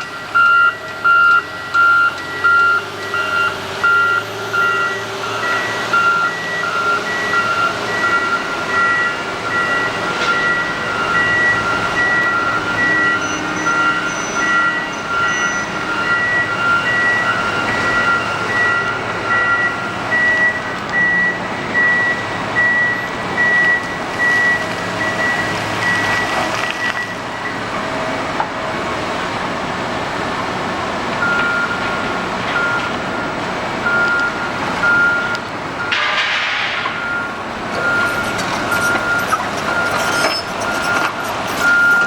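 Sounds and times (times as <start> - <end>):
lower-pitched reversing alarm: 0.0 - 27.8, 36.8 - 42.0
reversing alarm beeping: 0.0 - 27.8, 31.2 - 42.0
construction machines running: 0.0 - 42.0.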